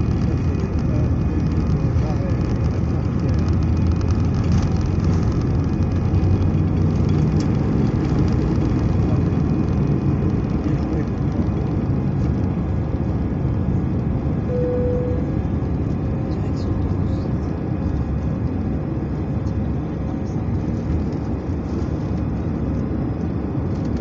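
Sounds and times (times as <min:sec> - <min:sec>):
airliner cabin engine rumble: 0:00.0 - 0:24.0.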